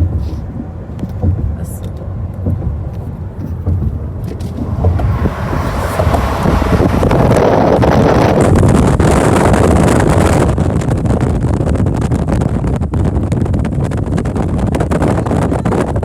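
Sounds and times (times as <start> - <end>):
car wind and road noise: 0.0 - 16.0
wind buffeting microphone: 0.0 - 16.0.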